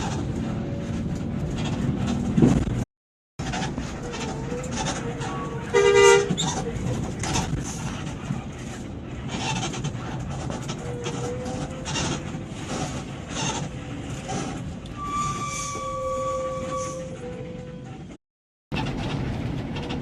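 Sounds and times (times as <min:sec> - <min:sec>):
heavy road traffic: 0:00.0 - 0:20.0
vehicle horn: 0:05.4 - 0:06.4.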